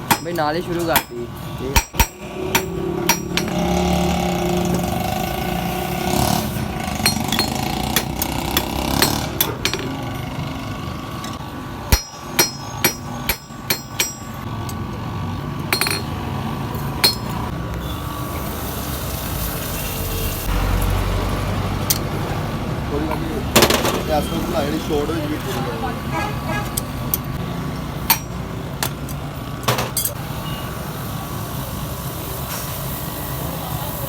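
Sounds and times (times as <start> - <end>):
hammer striking metal: 0.0 - 10.4, 11.2 - 14.8, 15.7 - 16.2, 16.8 - 17.5, 28.0 - 28.4
steady background noise: 0.0 - 34.0.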